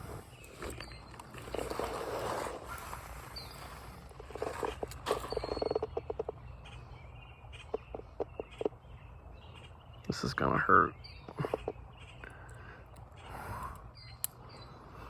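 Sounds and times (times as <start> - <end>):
faint bird chirp: 0.0 - 15.0
frog clicking call: 5.5 - 6.8, 7.5 - 8.8, 11.2 - 12.6.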